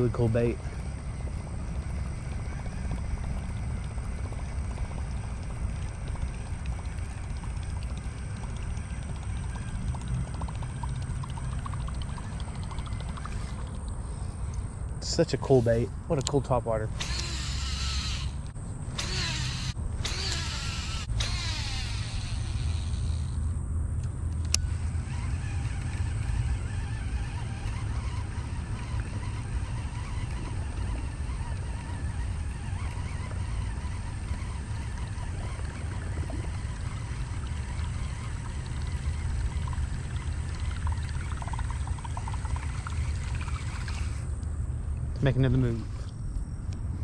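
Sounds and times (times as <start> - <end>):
faint water sounds: 0.0 - 46.2
wind buffeting microphone: 24.2 - 45.5.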